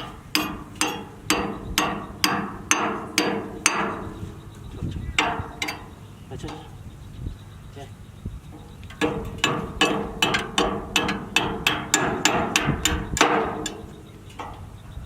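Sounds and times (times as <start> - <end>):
sharp knocks on metal: 0.0 - 4.4, 5.1 - 6.7, 8.6 - 14.7
ringing tone: 0.0 - 9.8.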